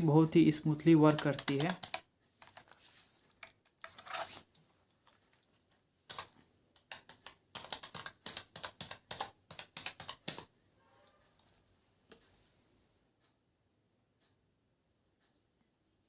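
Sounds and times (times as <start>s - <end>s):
keyboard keystrokes: 1.0s - 2.8s, 6.1s - 10.5s.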